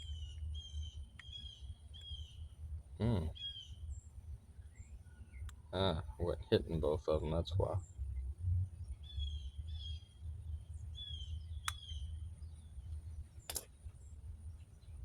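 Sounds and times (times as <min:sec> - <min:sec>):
bird chirping: 0:00.0 - 0:15.0
steady low hum: 0:00.0 - 0:15.0
sharp clicks: 0:13.4 - 0:13.8.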